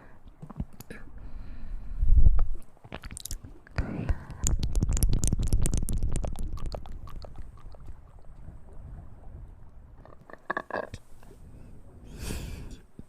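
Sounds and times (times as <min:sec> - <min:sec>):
wet mouth clicks: 0:02.4 - 0:09.1, 0:10.0 - 0:11.0.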